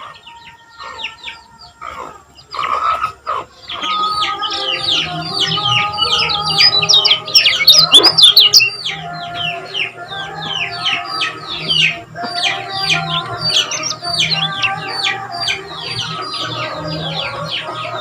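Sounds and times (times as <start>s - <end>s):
songbird high chirps: 0.0s - 18.0s
steady low tones: 4.8s - 18.0s.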